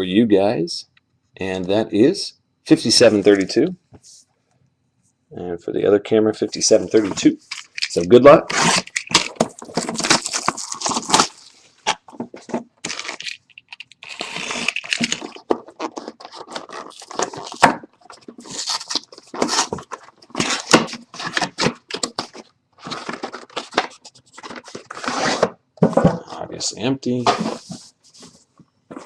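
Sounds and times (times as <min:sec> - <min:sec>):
wrapping tearing and crinkling: 0:07.4 - 0:12.2, 0:12.8 - 0:25.5
cardboard scrapes and knocks: 0:22.8 - 0:26.3, 0:27.2 - 0:29.0.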